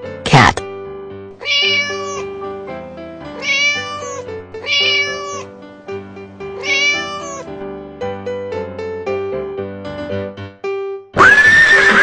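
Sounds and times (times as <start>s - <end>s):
background music: 0.0s - 12.0s
cat meowing: 1.4s - 2.4s, 3.4s - 5.6s, 6.6s - 7.5s.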